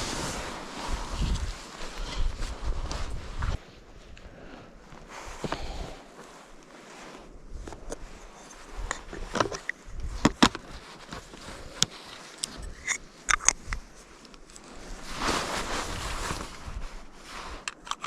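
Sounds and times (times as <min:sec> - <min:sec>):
objects being handled: 0:07.6 - 0:18.0.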